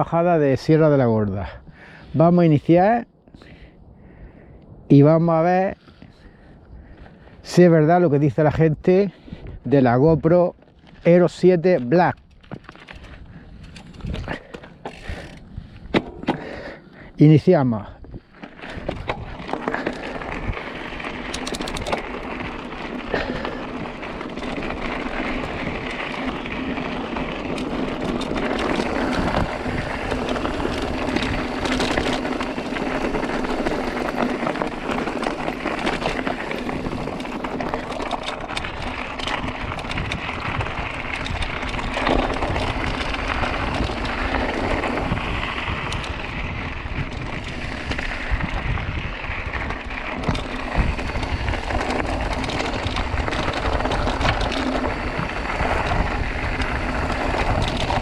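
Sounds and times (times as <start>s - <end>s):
bike rattling over rocks: 9.8s - 58.0s
tyres crunching over stones: 18.0s - 46.2s.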